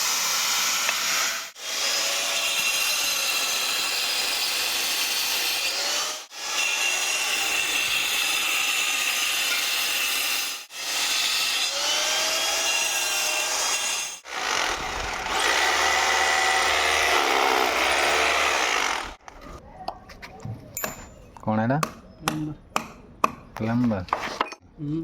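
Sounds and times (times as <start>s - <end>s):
angle grinder cutting metal: 0.0s - 19.2s.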